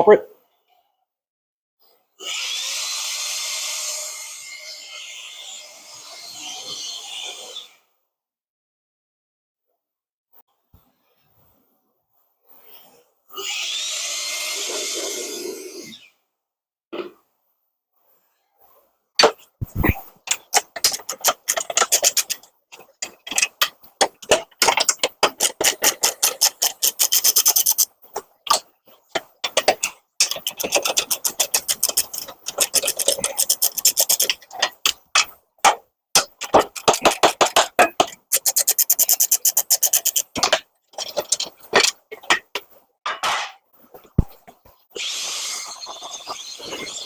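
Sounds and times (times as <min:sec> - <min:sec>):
ratchet wrench clicking: 0:25.8 - 0:27.9, 0:30.2 - 0:34.4, 0:38.2 - 0:40.4.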